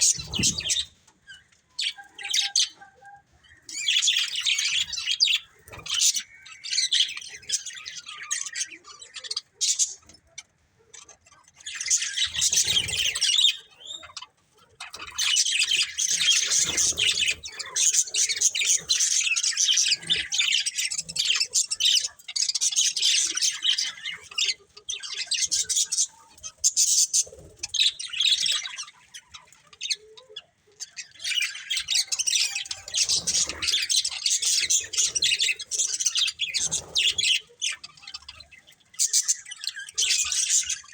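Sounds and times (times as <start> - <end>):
budgerigars chirping and chattering: 0.0 - 40.9.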